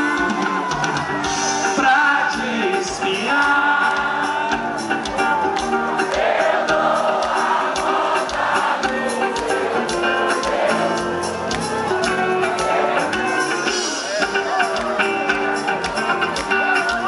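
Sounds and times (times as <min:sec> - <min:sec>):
person singing: 0:00.0 - 0:05.3, 0:12.5 - 0:17.0
crowd voices: 0:00.0 - 0:17.0
steady drum beat: 0:00.0 - 0:17.0.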